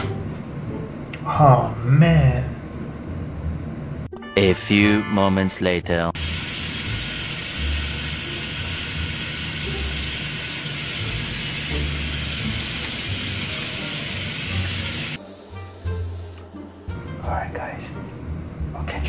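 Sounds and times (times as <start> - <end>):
shower water running: 6.2 - 16.4.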